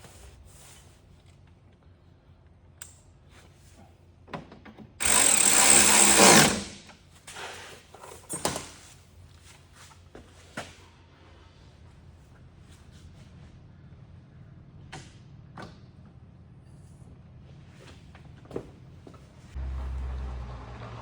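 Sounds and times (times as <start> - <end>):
power drill running: 5.0 - 6.9.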